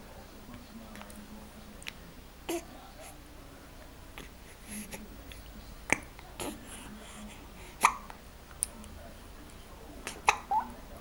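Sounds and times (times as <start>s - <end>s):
baby hiccupping: 7.8s - 8.2s, 10.0s - 10.8s.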